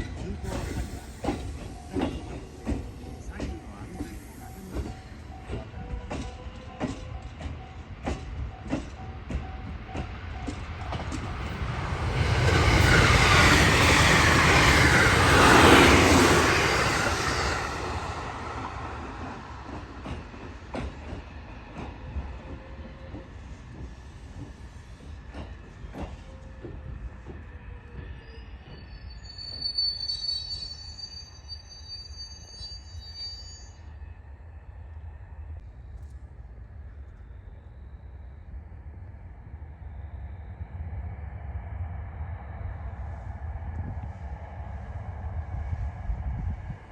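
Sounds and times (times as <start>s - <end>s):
train wheels clacking on rail joints: 0.0s - 16.9s, 19.2s - 28.8s
train rushing past: 0.0s - 32.3s.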